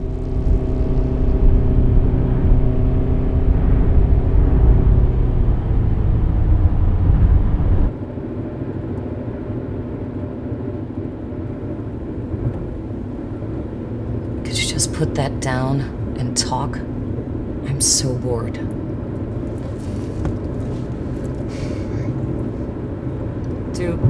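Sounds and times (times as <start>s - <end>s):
sustained low tones: 0.0s - 7.9s
car road noise: 0.0s - 8.0s, 11.0s - 24.0s
loud low rumble: 0.0s - 8.0s.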